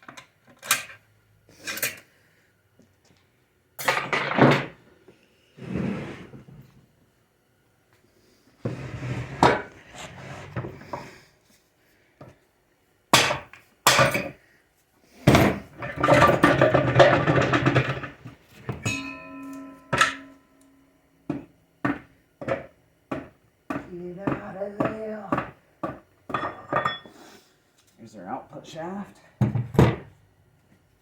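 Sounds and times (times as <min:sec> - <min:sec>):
metal parts knocking and clanking: 0:15.3 - 0:20.4
metal scraping and rattling: 0:15.3 - 0:20.4
struck metal ringing: 0:18.8 - 0:20.9.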